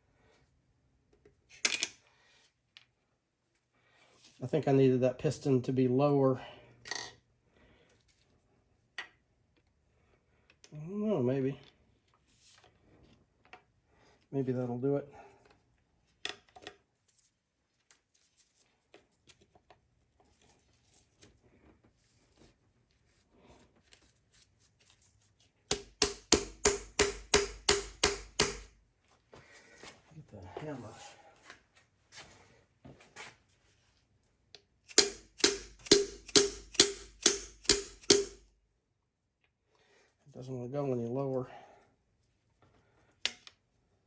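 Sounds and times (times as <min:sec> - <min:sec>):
hammer blows ringing on metal: 0:25.7 - 0:28.7, 0:34.9 - 0:38.4
light tool clicks: 0:34.9 - 0:38.4.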